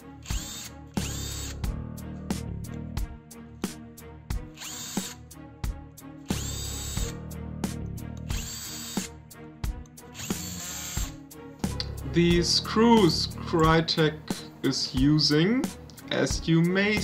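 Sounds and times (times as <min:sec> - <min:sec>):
electric screwdriver whining: 0:00.2 - 0:01.6, 0:04.5 - 0:05.2, 0:06.3 - 0:07.2, 0:08.2 - 0:09.2, 0:10.1 - 0:11.2.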